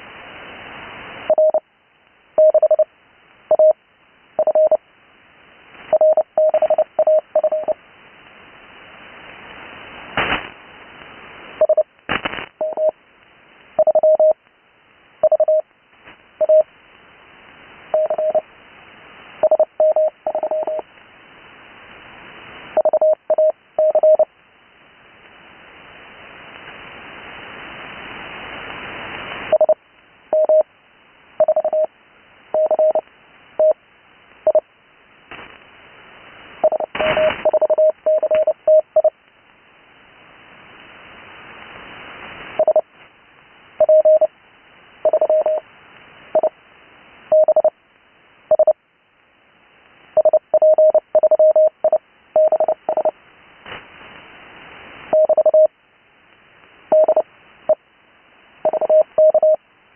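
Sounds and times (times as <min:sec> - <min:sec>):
radio band hiss: 0:04.3 - 0:23.1, 0:24.9 - 0:30.6, 0:35.1 - 0:43.9, 0:52.6 - 0:55.2
morse code tone: 0:04.4 - 0:04.8, 0:06.0 - 0:07.8, 0:12.6 - 0:12.9, 0:15.2 - 0:15.6, 0:18.0 - 0:18.4, 0:19.4 - 0:20.8, 0:31.4 - 0:31.9, 0:36.6 - 0:39.1, 0:43.8 - 0:44.3, 0:45.1 - 0:45.6, 0:47.3 - 0:47.7, 0:50.2 - 0:53.1, 0:55.2 - 0:55.7, 0:56.9 - 0:57.2, 0:58.7 - 0:59.6.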